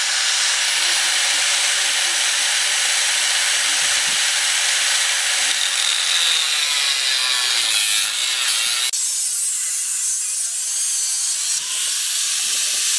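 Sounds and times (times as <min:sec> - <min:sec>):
power tool cutting steel: 0:00.0 - 0:12.9.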